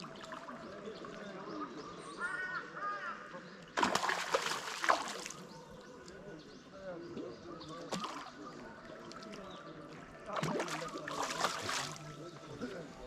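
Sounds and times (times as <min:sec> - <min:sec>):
water splashing hard: 0:03.8 - 0:05.5, 0:07.8 - 0:08.4, 0:10.4 - 0:12.1.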